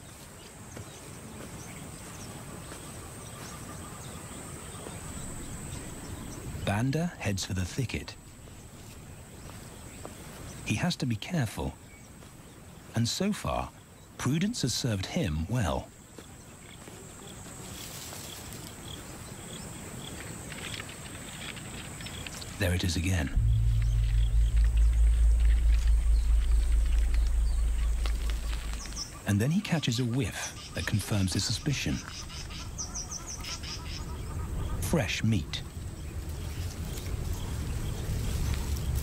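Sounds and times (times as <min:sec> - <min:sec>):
insects droning: 0:00.0 - 0:39.0
low rumble: 0:22.6 - 0:29.8.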